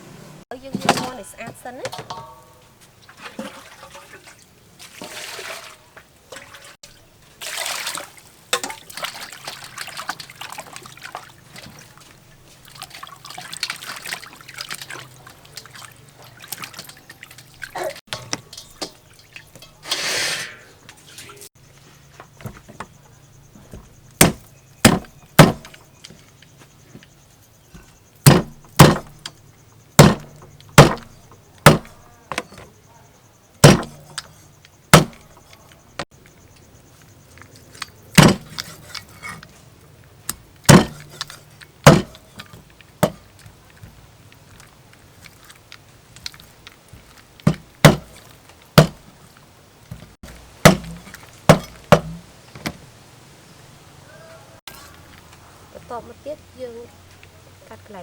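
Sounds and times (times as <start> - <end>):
cleaver chopping on board: 24.2 - 25.7, 28.3 - 29.1, 30.0 - 31.9, 33.6 - 34.0, 35.0 - 35.2, 38.2 - 38.6, 40.7 - 42.2, 47.5 - 48.1, 48.8 - 49.0, 50.6 - 52.2.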